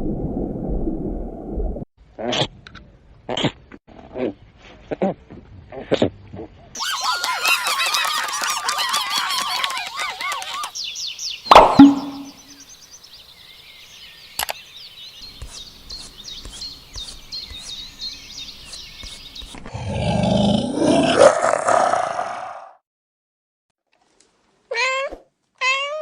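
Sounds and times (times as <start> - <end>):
sharp knock: 11.5 - 12.4
loud rough animal roar: 19.7 - 22.8.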